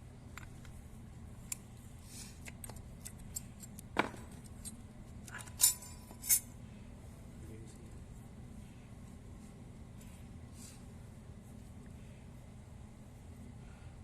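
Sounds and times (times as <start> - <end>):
steel parts and tools clinking: 5.4 - 6.5.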